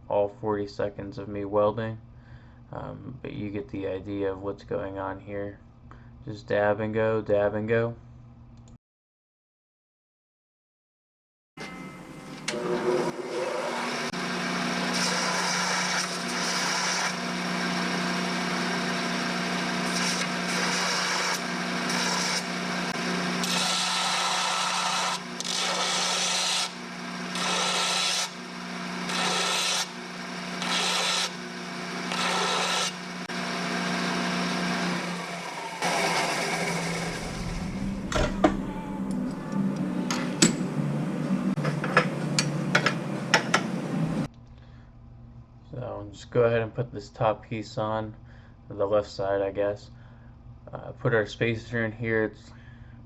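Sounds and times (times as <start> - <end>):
low electrical hum: 0.0 - 8.8, 37.0 - 53.0
welding arc hissing: 19.8 - 26.8.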